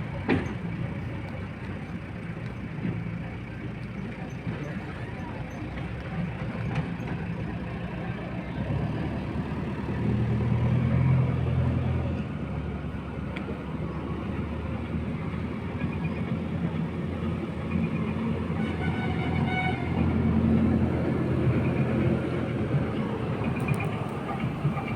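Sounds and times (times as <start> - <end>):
diesel engine revving: 7.5 - 24.9.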